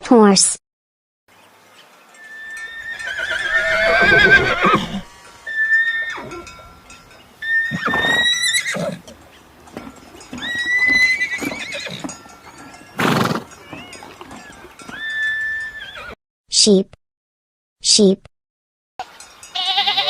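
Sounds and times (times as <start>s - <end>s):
horse whinnying: 2.3s - 6.5s, 7.4s - 9.1s, 10.4s - 16.2s.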